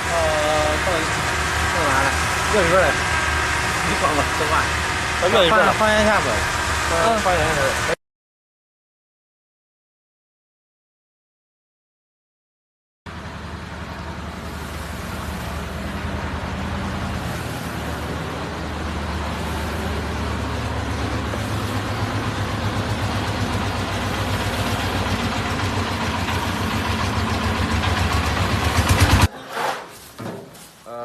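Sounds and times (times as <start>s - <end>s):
vehicle engine running: 0.0s - 8.0s, 13.1s - 29.3s.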